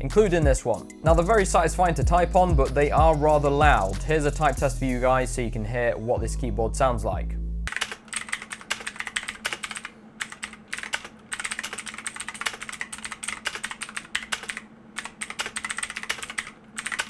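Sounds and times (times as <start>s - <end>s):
fast typing on mechanical keyboard: 7.7s - 17.0s.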